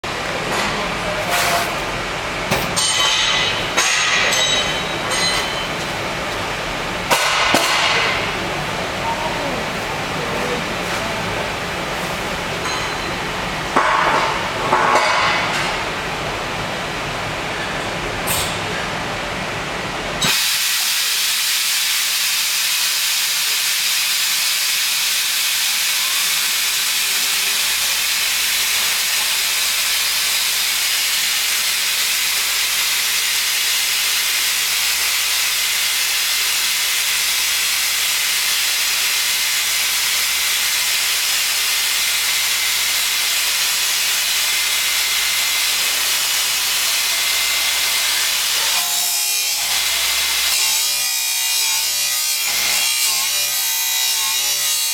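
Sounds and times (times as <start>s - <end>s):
cut-off wheel grinding metal: 21.8s - 54.9s.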